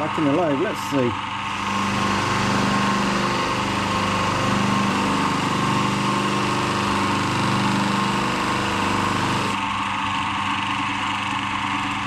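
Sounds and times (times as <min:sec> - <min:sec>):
electric motor humming: 0:01.4 - 0:09.6.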